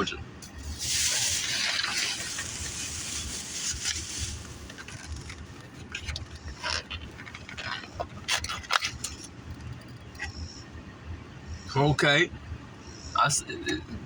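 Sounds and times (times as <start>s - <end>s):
food packaging rustling: 0.8s - 9.8s
clicks and scrapes: 0.9s - 10.3s.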